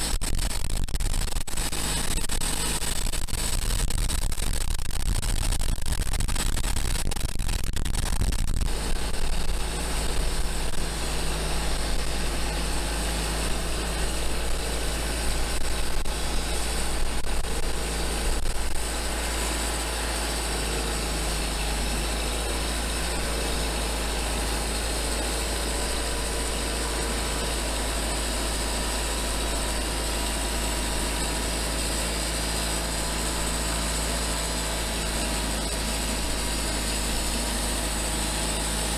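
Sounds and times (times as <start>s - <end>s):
engine-driven band sawmill running: 1.6s - 2.8s, 8.7s - 38.9s.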